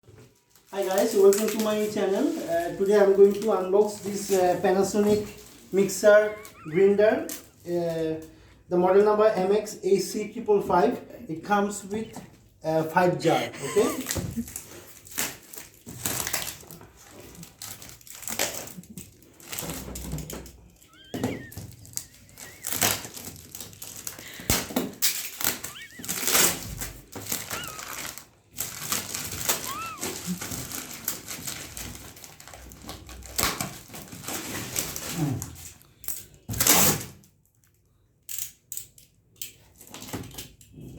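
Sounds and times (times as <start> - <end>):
packaging rustling: 0.1 - 7.7, 13.6 - 35.9
brief squeaks: 25.5 - 26.8.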